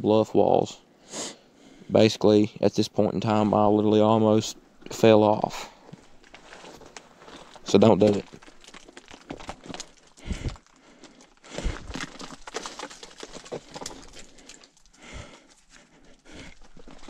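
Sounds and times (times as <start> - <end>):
footsteps crunching on rock: 5.8 - 15.0.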